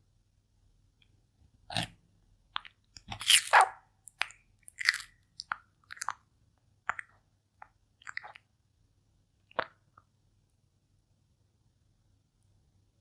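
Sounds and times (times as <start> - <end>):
turtle crunching food: 2.6 - 6.3.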